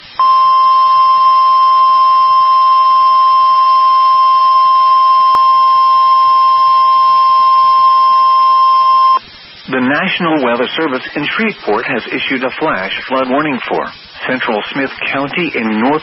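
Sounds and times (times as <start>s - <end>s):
steady loud alarm tone: 0.2s - 9.2s.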